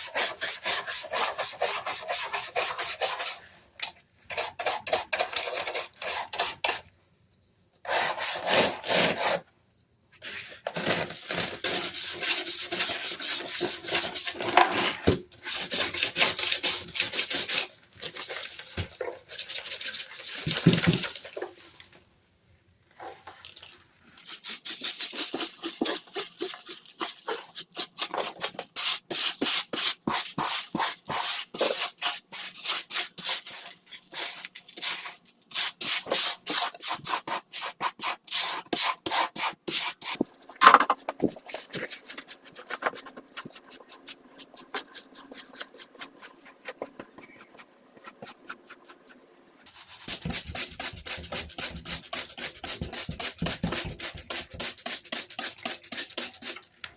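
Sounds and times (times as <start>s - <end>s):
scrubbing keyboard: 24.3s - 54.6s.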